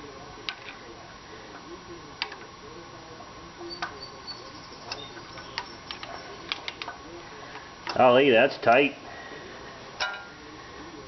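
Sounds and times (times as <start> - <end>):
hand tools clicking on metal: 4.9 - 7.0.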